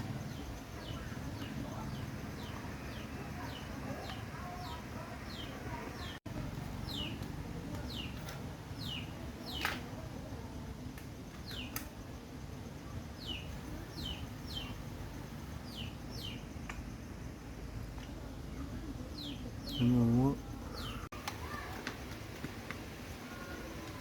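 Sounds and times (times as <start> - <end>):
small bird chirping: 0.0 - 9.8, 11.3 - 11.9, 13.2 - 17.7, 18.5 - 21.8.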